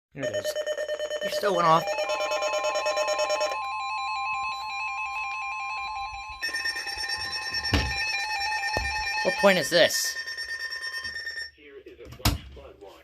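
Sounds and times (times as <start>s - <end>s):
fast electronic beeping: 0.2s - 3.5s.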